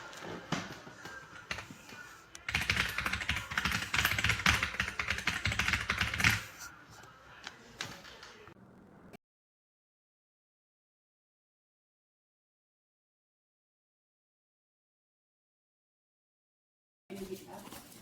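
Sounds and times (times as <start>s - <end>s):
mechanical keyboard typing: 2.4s - 6.5s.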